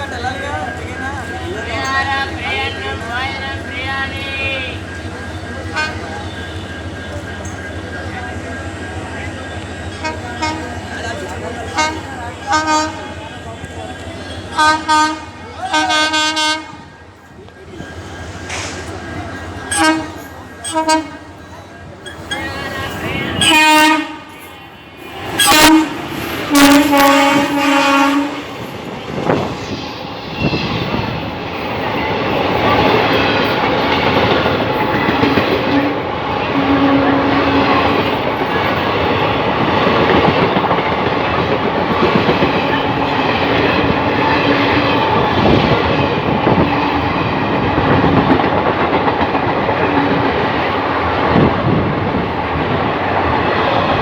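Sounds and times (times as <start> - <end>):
train passing at speed: 0.0 - 54.0
locomotive horn blasts: 5.7 - 6.8, 10.0 - 10.9, 11.7 - 13.5, 14.4 - 16.9, 19.7 - 21.4, 22.6 - 24.4, 25.3 - 28.5, 35.7 - 38.2
wheels clacking over rail joints: 30.7 - 54.0.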